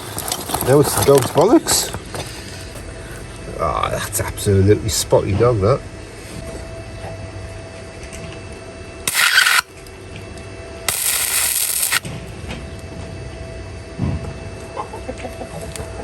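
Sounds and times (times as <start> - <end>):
welding arc crackling: 0.0 - 2.7, 9.0 - 10.0, 10.8 - 12.4.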